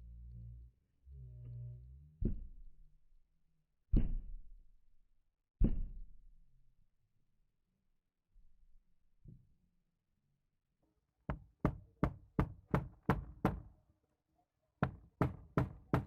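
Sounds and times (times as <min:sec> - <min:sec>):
low hum: 0:00.0 - 0:03.0
hammer knocks: 0:11.3 - 0:13.7, 0:14.8 - 0:16.0.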